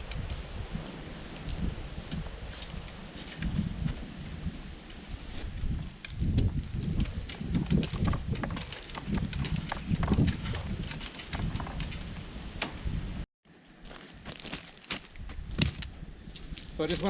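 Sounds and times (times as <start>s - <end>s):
wind rumble on microphone: 0.0s - 13.3s, 15.1s - 17.0s
fence wire clicking and knocking: 6.0s - 12.9s.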